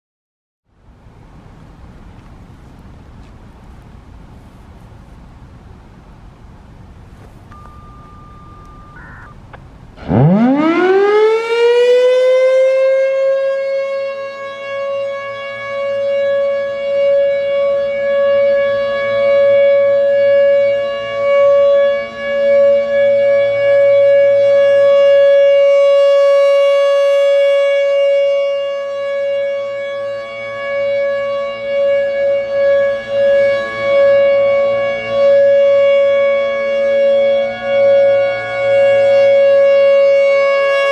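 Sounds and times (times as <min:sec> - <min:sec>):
civil defense siren: 0:07.5 - 0:40.9.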